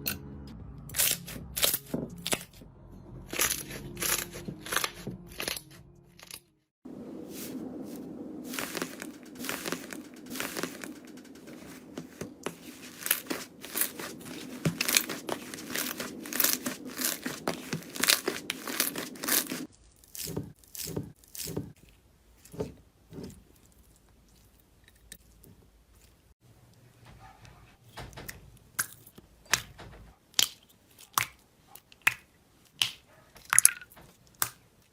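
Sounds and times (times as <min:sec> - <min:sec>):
slime popping and crackling: 0:08.5 - 0:21.6.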